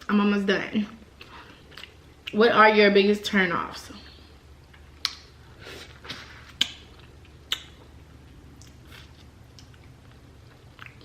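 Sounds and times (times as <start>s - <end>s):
person chewing food: 1.2s - 2.4s, 4.6s - 11.0s.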